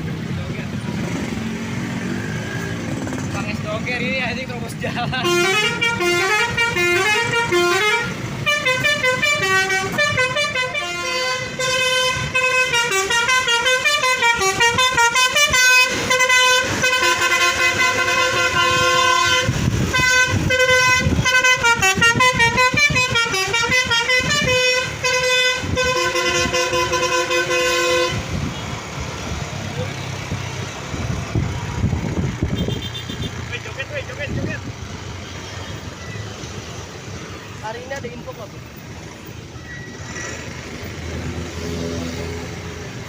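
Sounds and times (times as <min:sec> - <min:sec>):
bus horn playing a multi-note tune: 0:05.2 - 0:28.6, 0:32.5 - 0:33.4.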